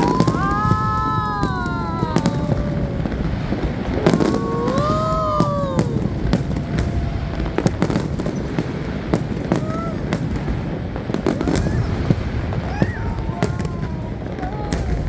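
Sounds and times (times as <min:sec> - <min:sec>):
people whooping: 0:00.0 - 0:08.6, 0:09.3 - 0:10.5, 0:11.2 - 0:15.0
fireworks bangs and crackles: 0:00.0 - 0:15.0.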